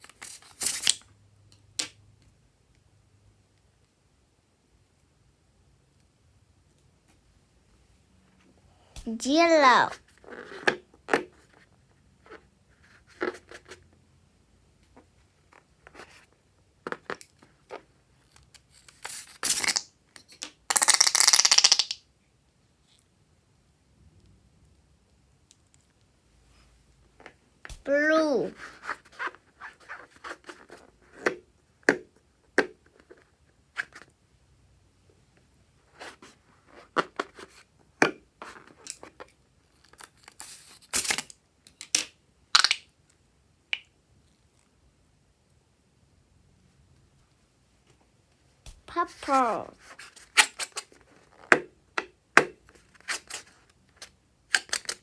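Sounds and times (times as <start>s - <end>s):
slime and balloons snapping: 20.7s - 22.0s.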